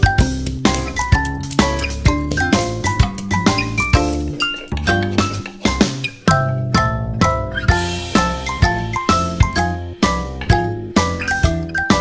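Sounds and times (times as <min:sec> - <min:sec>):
tinkling bell-like melody: 0:06.3 - 0:12.0.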